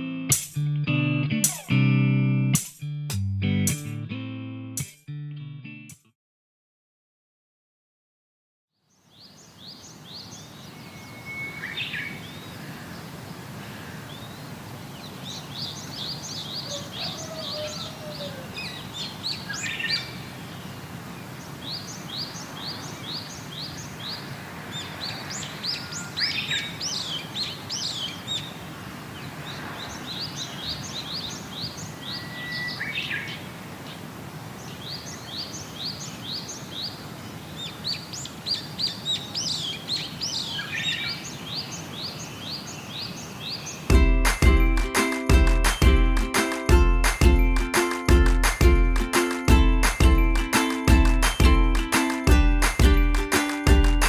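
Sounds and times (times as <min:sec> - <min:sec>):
low outdoor background noise: 0:08.8 - 0:43.9
birds chirping: 0:08.9 - 0:54.0
bird whistled notes: 0:10.8 - 0:12.1, 0:32.1 - 0:33.0.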